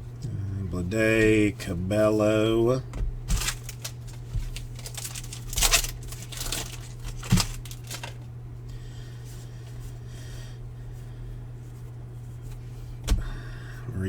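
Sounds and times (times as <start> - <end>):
steady low hum: 0.0 - 14.0
rustling of cards and foil wrappers: 3.2 - 8.4.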